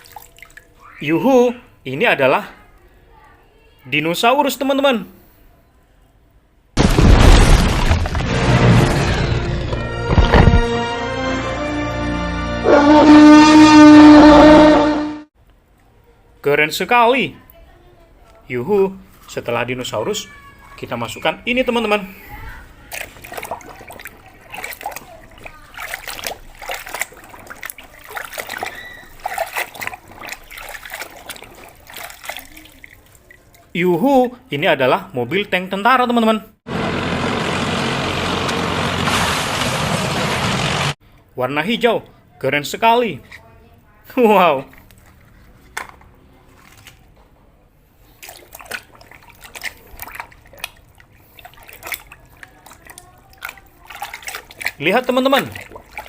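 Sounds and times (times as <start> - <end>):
water splashing in a tub: 0.0 - 1.4, 20.0 - 34.3, 44.2 - 47.2, 47.9 - 56.0.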